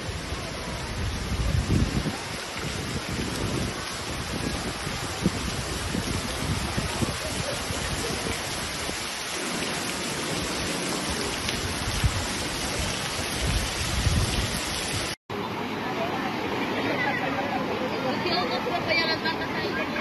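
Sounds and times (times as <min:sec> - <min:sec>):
wind buffeting microphone: 0:00.0 - 0:15.2
torrential rain pouring: 0:00.0 - 0:20.0.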